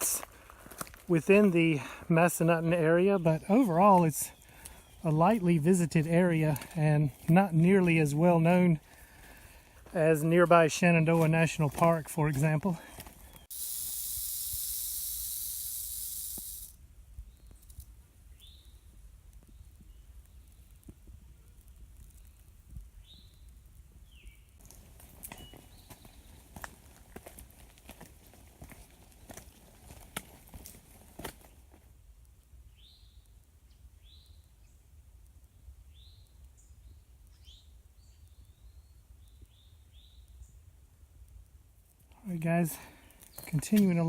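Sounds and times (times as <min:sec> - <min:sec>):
loud high-pitched hiss: 0:13.4 - 0:16.8.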